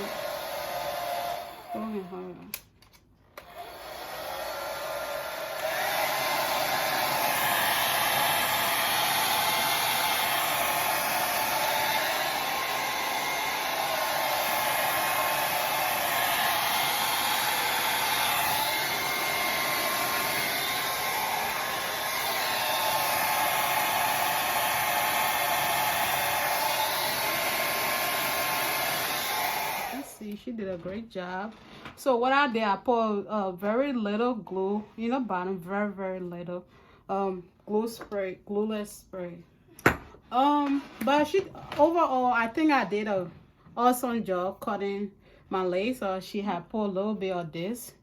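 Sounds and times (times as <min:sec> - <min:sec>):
hair dryer blowing: 0:00.0 - 0:02.7, 0:03.3 - 0:30.4.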